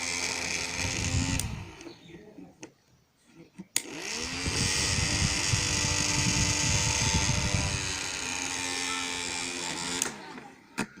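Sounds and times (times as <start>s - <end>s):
table fan motor running: 0.0s - 2.0s, 3.8s - 10.5s.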